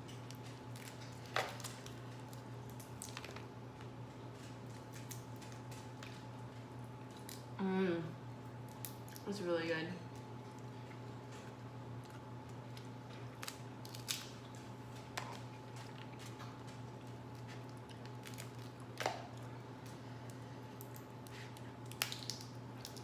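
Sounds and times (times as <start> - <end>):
steady low hum: 0.0 - 23.0
crab shell cracking: 0.1 - 3.5, 7.0 - 7.6, 8.5 - 9.2, 12.0 - 23.0.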